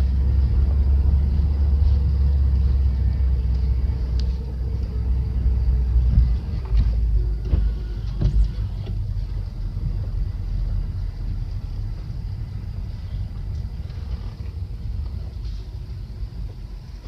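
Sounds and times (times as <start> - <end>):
car engine and road rumble: 0.0 - 17.0.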